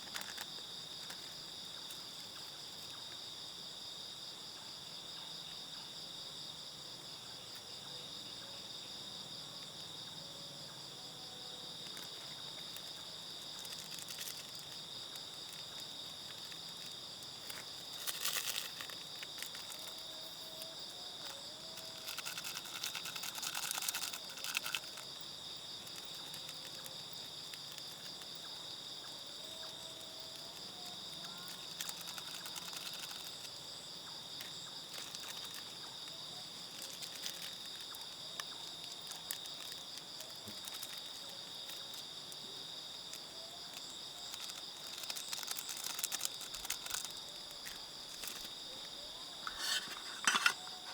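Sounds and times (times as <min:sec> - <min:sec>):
crickets and insects chirping: 0:00.0 - 0:50.9
scratchy rustle: 0:49.4 - 0:50.9.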